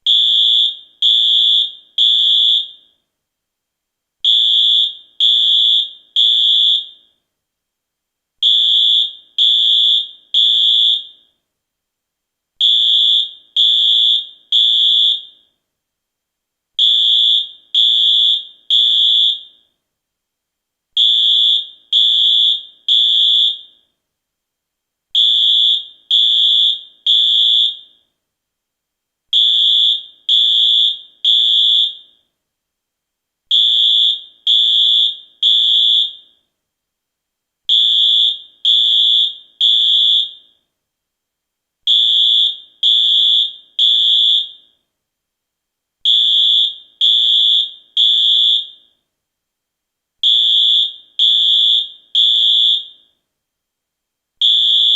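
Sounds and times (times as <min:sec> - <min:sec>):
fire alarm beeps: 0:00.0 - 0:03.0, 0:04.3 - 0:07.2, 0:08.4 - 0:11.4, 0:12.6 - 0:15.6, 0:16.8 - 0:19.7, 0:21.0 - 0:23.9, 0:25.2 - 0:28.1, 0:29.4 - 0:32.3, 0:33.5 - 0:36.5, 0:37.7 - 0:40.6, 0:41.9 - 0:44.8, 0:46.1 - 0:49.0, 0:50.2 - 0:53.2, 0:54.4 - 0:54.9.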